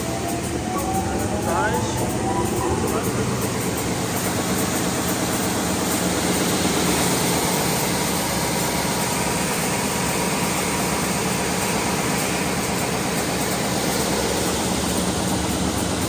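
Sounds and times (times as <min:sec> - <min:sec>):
belt sanding machine droning: 0:00.0 - 0:10.4.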